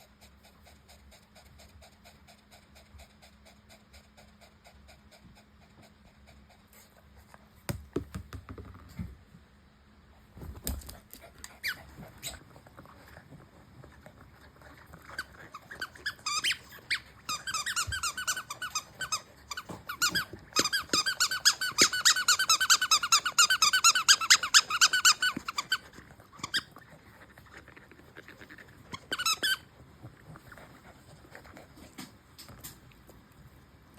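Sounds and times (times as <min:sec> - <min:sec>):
squeaky toy squeaking: 0:15.7 - 0:26.7, 0:28.9 - 0:29.7.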